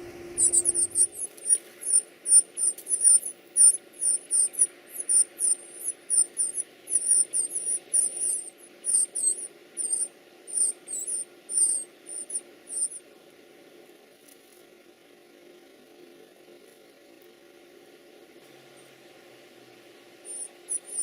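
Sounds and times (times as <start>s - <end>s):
baby birds cheeping: 0.0s - 13.0s, 20.2s - 21.0s
faint steady hum: 0.0s - 21.0s.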